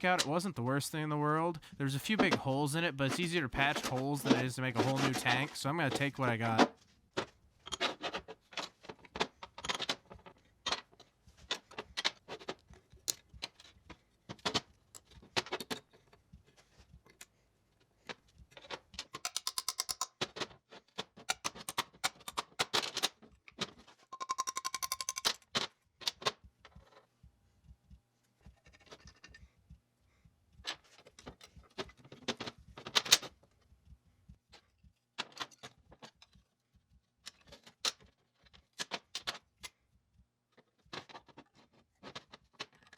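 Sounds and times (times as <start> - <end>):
metal tool clicks and taps: 19.2 - 20.1, 24.3 - 25.4.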